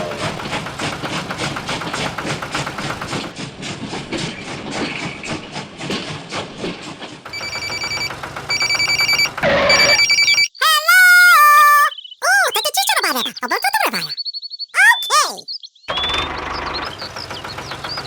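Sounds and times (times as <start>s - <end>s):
electronic ringing: 7.4s - 10.6s.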